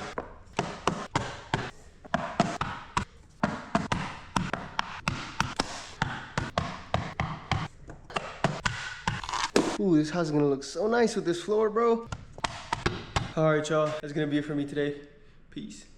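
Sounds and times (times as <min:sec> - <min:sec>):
flooring planks being tapped: 0:00.0 - 0:09.8, 0:12.1 - 0:14.0.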